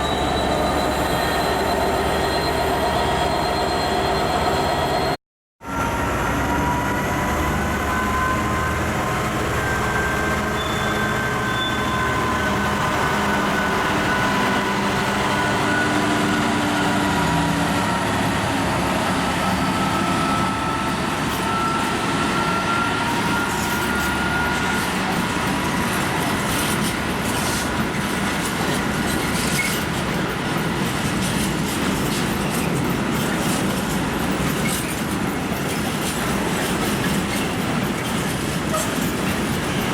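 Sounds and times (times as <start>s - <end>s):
train running noise: 0.0s - 39.9s
wheels squealing: 7.6s - 39.9s
wheels clicking over rail joints: 24.9s - 39.9s.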